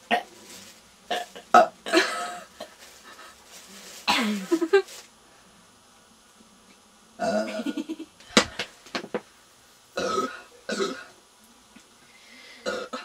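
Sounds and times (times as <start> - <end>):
person burping: 1.1 - 2.5, 7.2 - 7.8, 10.0 - 11.1, 12.6 - 13.0.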